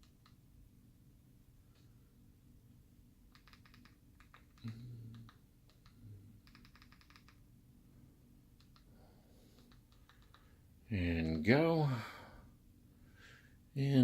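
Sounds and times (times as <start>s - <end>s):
steady low hum: 0.0s - 14.0s
keyboard key clicks: 3.3s - 7.4s, 9.6s - 10.5s.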